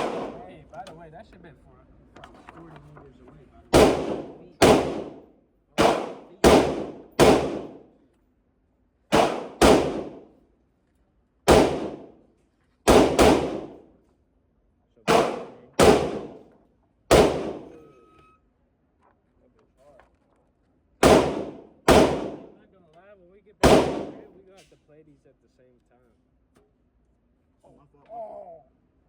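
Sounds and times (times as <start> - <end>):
gunshots with echo: 0.0 - 0.5, 3.7 - 7.9, 9.1 - 10.4, 11.5 - 12.2, 12.9 - 13.8, 15.1 - 16.5, 17.1 - 17.8, 21.0 - 22.6, 23.6 - 24.4.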